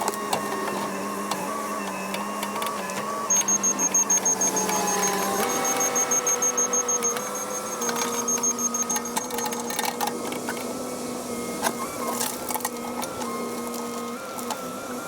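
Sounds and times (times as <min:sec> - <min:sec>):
hydraulic whine: 0:00.0 - 0:15.0
excavator engine running: 0:02.4 - 0:10.4.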